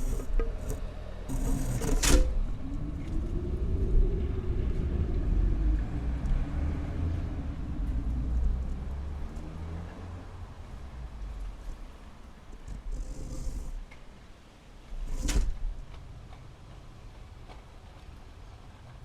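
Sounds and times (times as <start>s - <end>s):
passing motor vehicle rumble: 0.0s - 19.0s.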